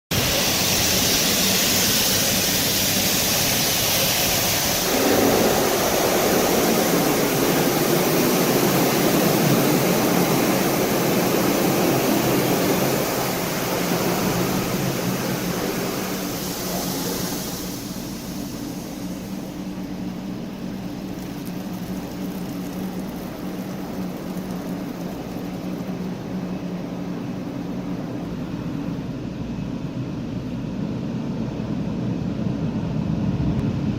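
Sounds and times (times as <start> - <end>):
heavy rain: 0.1 - 30.0
thunder rumbling: 0.1 - 30.7
strong wind: 0.1 - 33.9.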